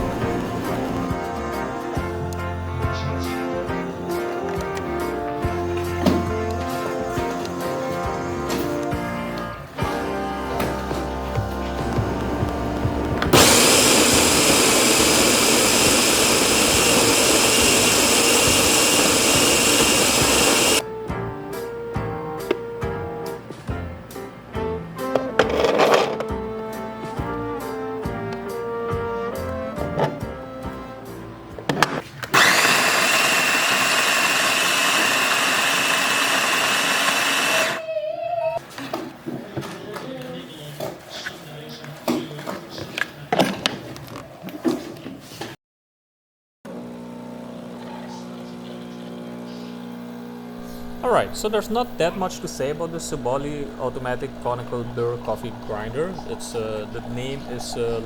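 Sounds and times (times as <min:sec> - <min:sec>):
coffee grinder motor whining: 0:00.0 - 0:02.5, 0:11.4 - 0:20.8, 0:32.3 - 0:37.9, 0:46.7 - 0:58.0
grinder clicks: 0:13.2 - 0:20.8, 0:32.3 - 0:37.8.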